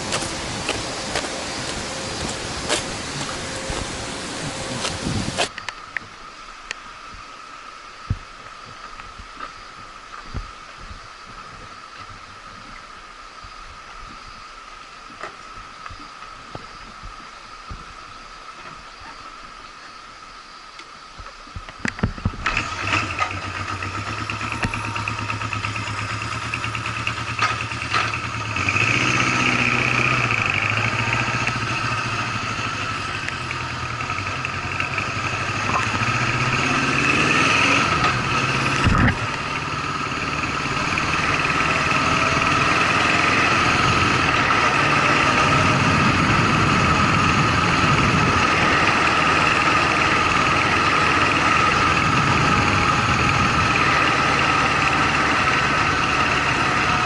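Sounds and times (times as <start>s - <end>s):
motorcycle engine starting and idling: 21.8s - 57.0s.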